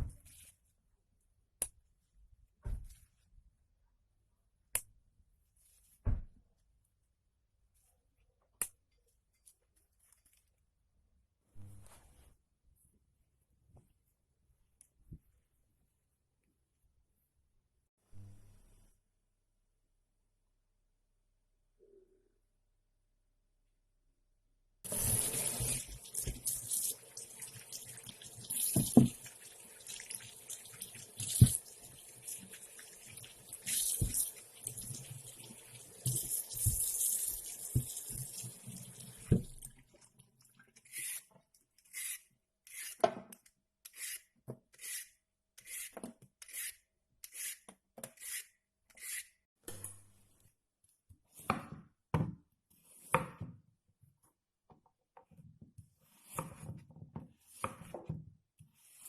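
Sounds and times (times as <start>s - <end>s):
tap running into a sink: 24.9s - 32.6s, 33.6s - 35.4s.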